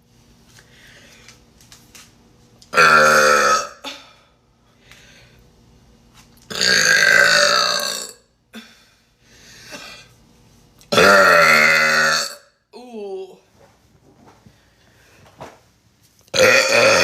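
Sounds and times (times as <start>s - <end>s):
person burping loudly: 2.7s - 4.0s, 6.5s - 8.2s, 10.9s - 12.5s, 16.3s - 17.0s.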